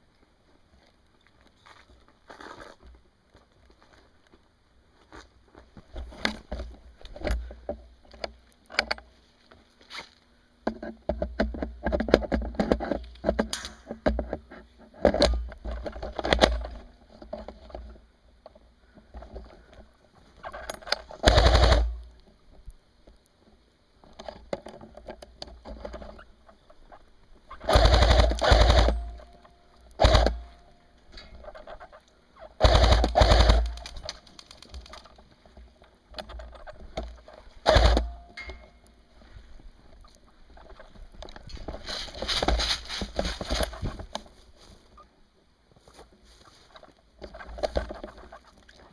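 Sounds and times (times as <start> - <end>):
airsoft rifles firing bursts: 21.2 - 22.0, 27.6 - 29.3, 30.0 - 30.5, 32.6 - 34.5, 37.6 - 38.2.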